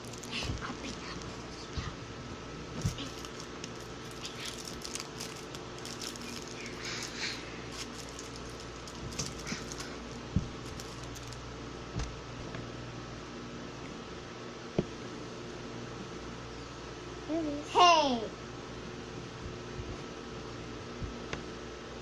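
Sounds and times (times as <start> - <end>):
drink pack rustling: 0.0 - 1.0, 2.8 - 11.4
steady low hum: 0.0 - 22.0.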